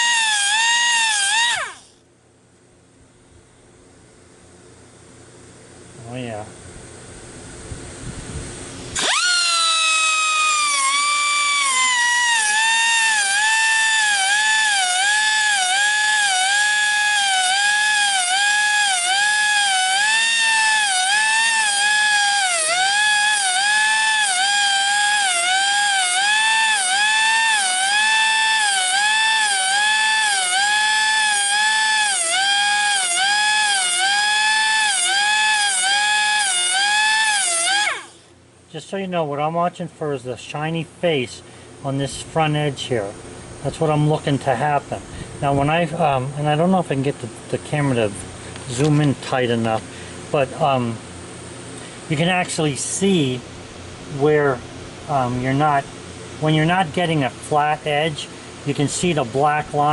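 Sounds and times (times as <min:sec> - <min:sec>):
air grinder high-pitched whine: 0:00.0 - 0:02.0, 0:08.9 - 0:38.3.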